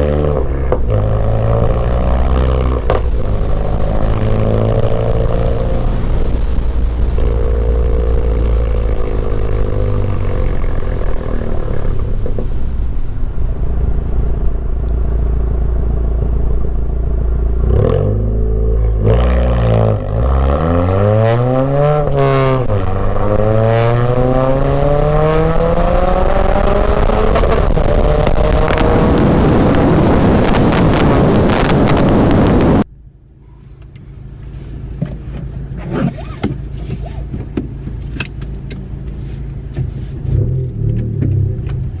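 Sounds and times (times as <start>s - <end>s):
turbocharged car engine revving: 0.0s - 32.9s.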